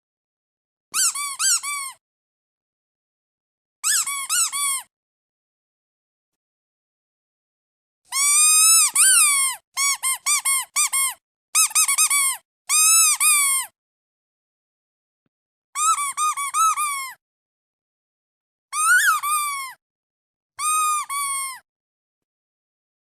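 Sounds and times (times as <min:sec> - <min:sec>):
rubber duck toy squeaking: 0:00.9 - 0:02.0, 0:03.8 - 0:04.9, 0:08.1 - 0:13.7, 0:15.8 - 0:17.2, 0:18.7 - 0:19.8, 0:20.6 - 0:21.6.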